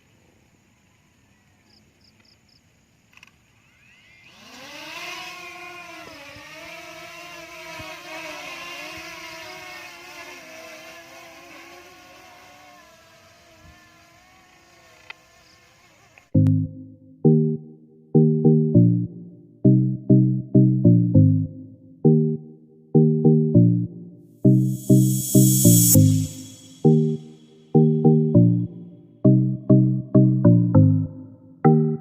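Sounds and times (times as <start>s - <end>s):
drone propellers buzzing: 3.6s - 16.3s, 24.5s - 28.6s.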